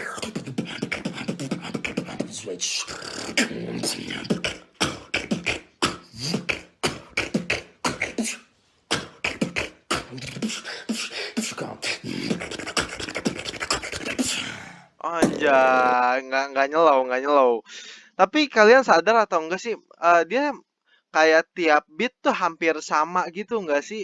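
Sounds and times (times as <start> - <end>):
person beatboxing: 0.0 - 16.0.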